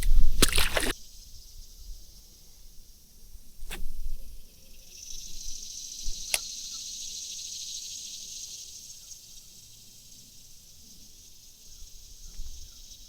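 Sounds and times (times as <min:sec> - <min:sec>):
high-pitched insect drone: 0:04.5 - 0:13.0
sharp click: 0:06.2 - 0:06.6.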